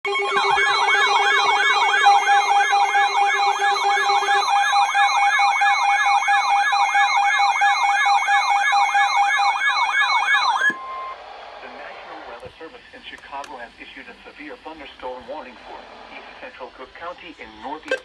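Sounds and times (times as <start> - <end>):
sweeping emergency siren: 0.0 - 11.2
steady alarm tones: 0.0 - 12.2.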